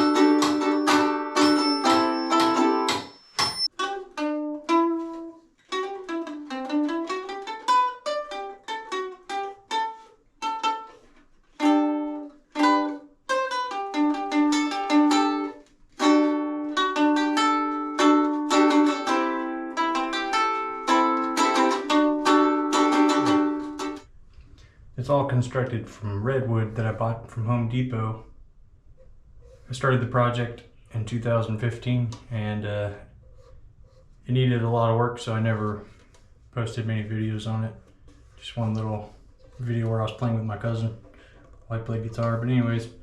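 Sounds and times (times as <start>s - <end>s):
ukulele playing notes and chords: 0.0s - 24.1s.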